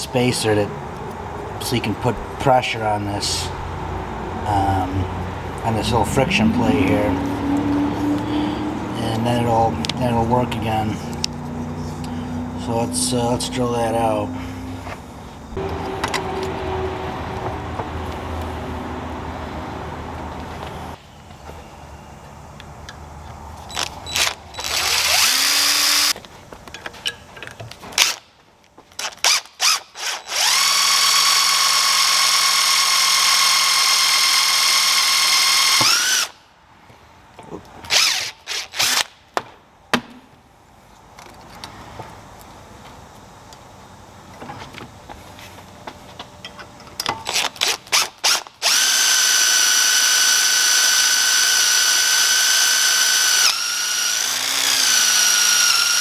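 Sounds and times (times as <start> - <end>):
power drill drilling: 23.7 - 26.2, 29.3 - 36.4, 37.9 - 39.1, 47.3 - 56.0.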